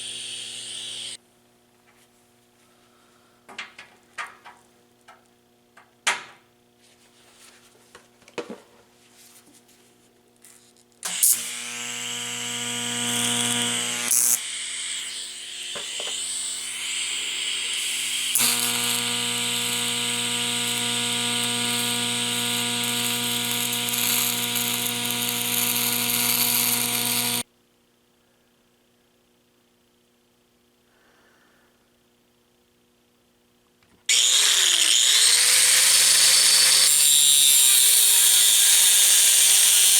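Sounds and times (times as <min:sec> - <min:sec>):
small electric power tool running: 0:00.0 - 0:01.2, 0:11.0 - 0:27.4, 0:34.1 - 0:39.9.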